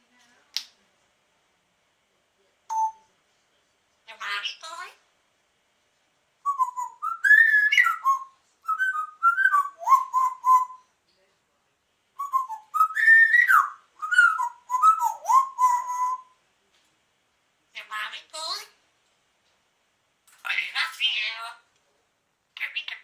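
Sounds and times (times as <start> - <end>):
parrot whistling: 6.5 - 10.8, 12.2 - 16.4.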